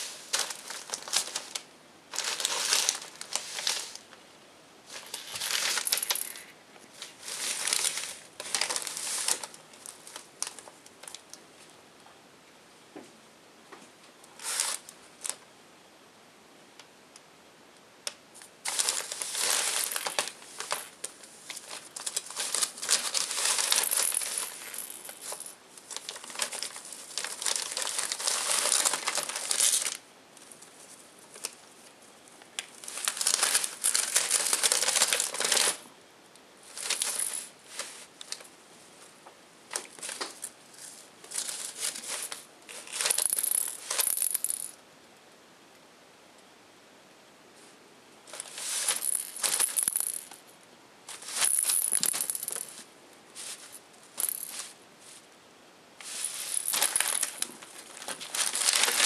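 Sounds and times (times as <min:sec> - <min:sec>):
packaging crinkling and rustling: 0:00.0 - 0:04.0, 0:06.9 - 0:11.2, 0:18.6 - 0:30.0, 0:32.6 - 0:35.8, 0:36.7 - 0:38.5, 0:39.7 - 0:43.2, 0:56.0 - 0:59.0.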